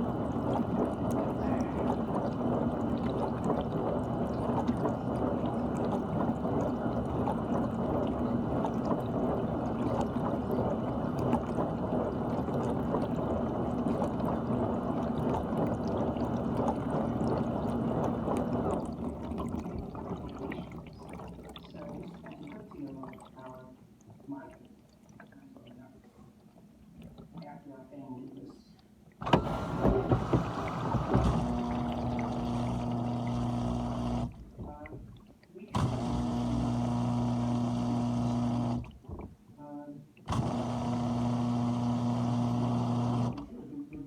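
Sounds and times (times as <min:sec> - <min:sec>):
water spraying inside dishwasher: 0:00.0 - 0:23.5, 0:29.2 - 0:39.3
water trickling and dripping: 0:00.0 - 0:29.2, 0:30.5 - 0:39.5
dishwasher pump hum: 0:00.0 - 0:44.0.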